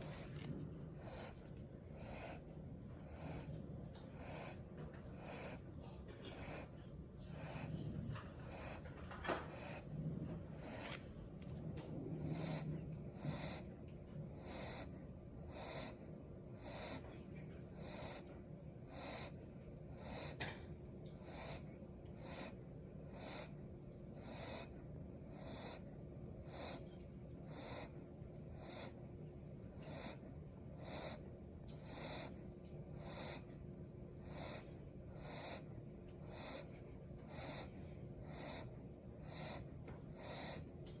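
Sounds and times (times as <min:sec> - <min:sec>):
puppy snoring: 0:00.0 - 0:29.0, 0:29.6 - 0:33.6, 0:34.2 - 0:41.0.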